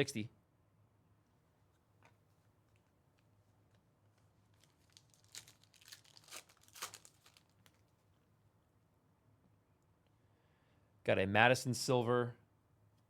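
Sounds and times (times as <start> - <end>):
plastic packaging crackling: 4.5 - 7.9.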